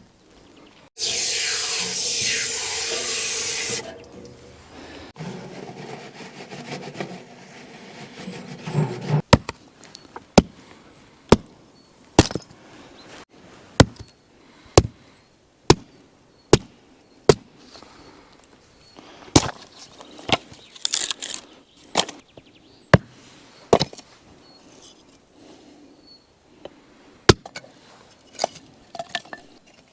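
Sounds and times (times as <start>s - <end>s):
firewood being chopped: 9.3s - 9.6s, 10.4s - 10.6s, 14.8s - 15.0s, 15.7s - 15.9s, 16.5s - 16.7s, 17.3s - 17.5s.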